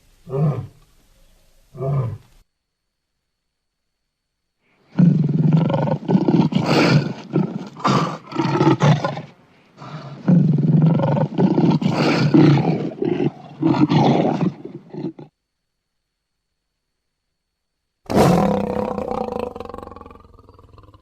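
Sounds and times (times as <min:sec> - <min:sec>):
lion roaring: 0:00.2 - 0:00.8, 0:01.7 - 0:02.3, 0:04.9 - 0:15.3, 0:18.1 - 0:21.0.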